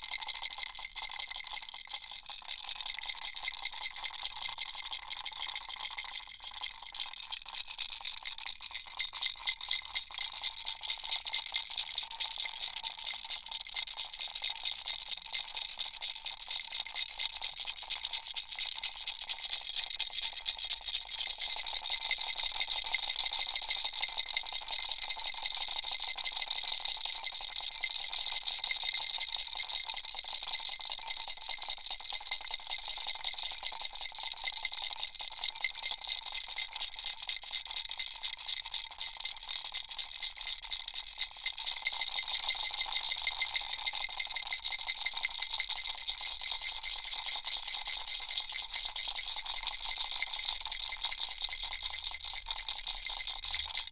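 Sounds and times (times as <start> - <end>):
baby rattle shaken: 39.6 - 53.9.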